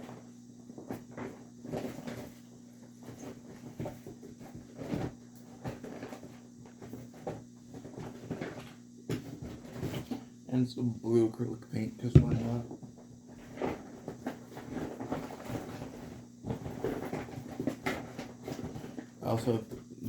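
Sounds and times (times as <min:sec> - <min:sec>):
electrical hum: 0:00.0 - 0:20.0
light knocks and taps on table: 0:12.2 - 0:12.5.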